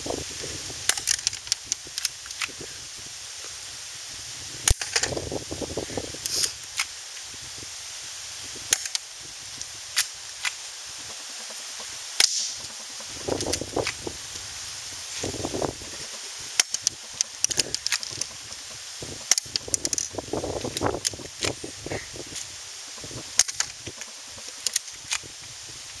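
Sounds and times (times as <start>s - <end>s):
airsoft pistol pops: 12.2s - 12.6s.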